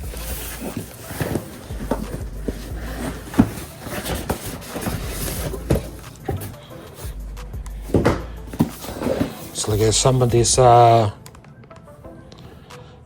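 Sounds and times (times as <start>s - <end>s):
cardboard box knocks and scuffs: 0.0s - 7.2s, 7.8s - 9.7s.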